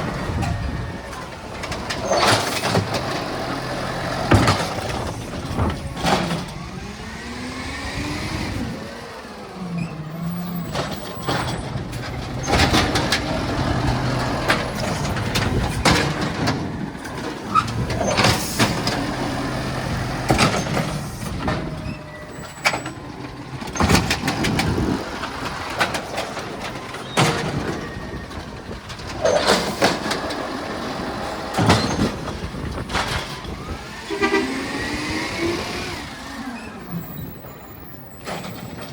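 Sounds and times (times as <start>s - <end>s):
loud clanks and bangs: 0.0s - 6.7s, 10.5s - 34.9s
truck engine running: 0.0s - 38.9s.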